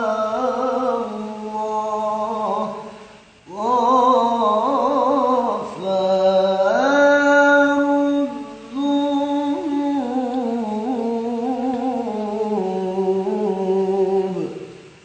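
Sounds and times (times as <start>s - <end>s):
man singing unaccompanied: 0.0s - 15.0s
singer breath: 2.9s - 3.4s.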